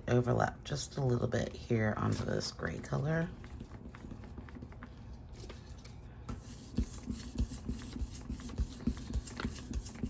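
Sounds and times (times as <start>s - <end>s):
scratchy rubbing on paper: 6.3s - 10.0s.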